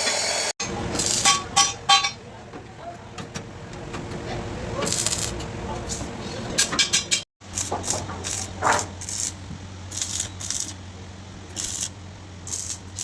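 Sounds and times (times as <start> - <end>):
sizzling tack welds: 0.0 - 1.8, 4.8 - 6.0, 7.4 - 10.8, 11.4 - 13.0
welding machine hum: 0.0 - 2.1, 4.0 - 6.1, 7.4 - 13.0.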